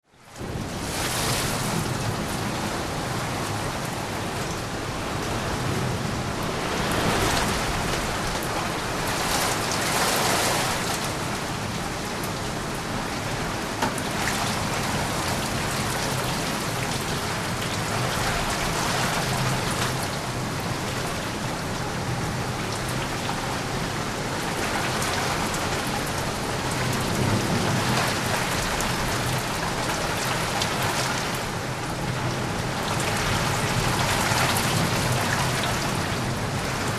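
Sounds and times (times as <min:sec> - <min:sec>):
steady rain falling: 0:00.0 - 0:36.9
thunder rumbling: 0:26.5 - 0:31.0.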